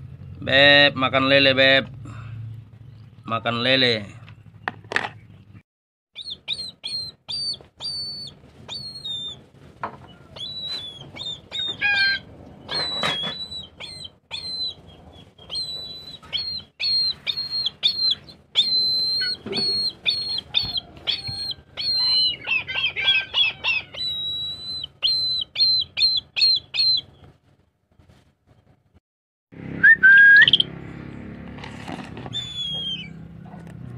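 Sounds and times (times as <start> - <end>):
eagle whistled chirps: 6.2 - 9.4, 10.3 - 27.1, 29.8 - 30.7, 32.3 - 33.2.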